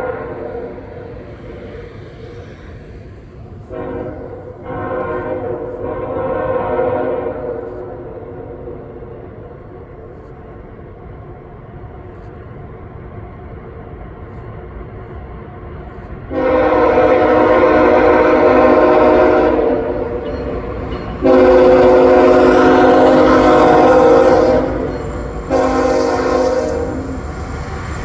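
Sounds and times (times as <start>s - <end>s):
locomotive air horn blasts: 0.0s - 1.1s, 3.6s - 9.0s, 16.3s - 27.2s.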